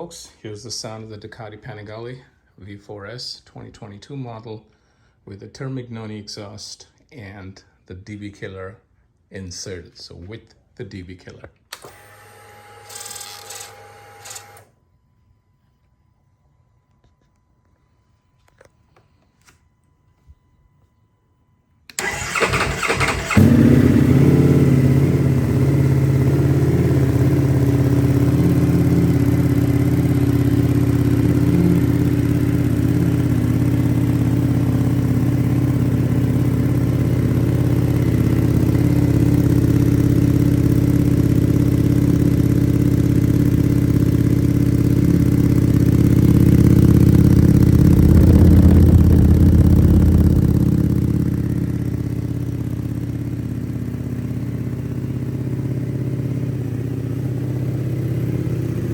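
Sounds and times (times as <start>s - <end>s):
motorcycle engine idling: 22.0s - 58.9s.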